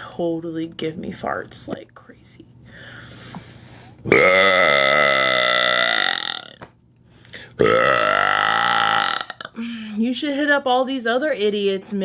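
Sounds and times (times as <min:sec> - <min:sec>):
deep belches: 0:04.1 - 0:06.6, 0:07.6 - 0:09.5.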